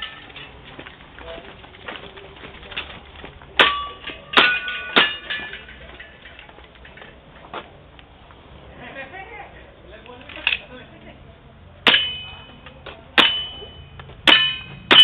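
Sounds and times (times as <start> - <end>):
metallic pings on steel targets: 3.6 - 7.0, 11.8 - 15.0.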